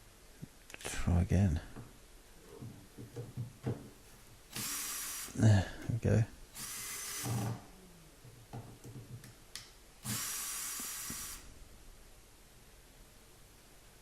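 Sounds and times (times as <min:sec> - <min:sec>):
power drill driving screw: 0:04.5 - 0:05.4, 0:06.5 - 0:07.6, 0:10.0 - 0:11.5.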